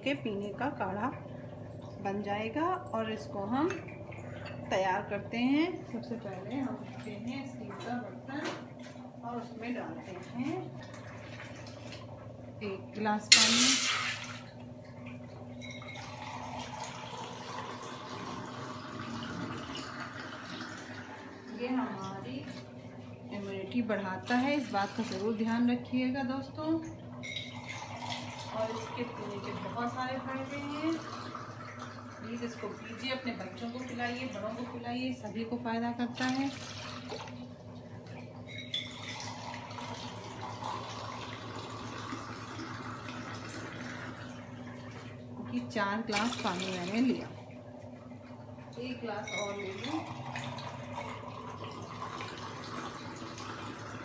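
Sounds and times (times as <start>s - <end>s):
water pouring into a steel pot: 13.3s - 14.5s, 15.7s - 21.6s, 38.7s - 44.5s, 46.1s - 47.3s, 48.8s - 54.0s
water pouring into steel pot: 13.3s - 14.5s
glass clinking: 15.6s - 16.4s, 27.2s - 27.8s, 38.5s - 39.5s, 49.2s - 49.8s.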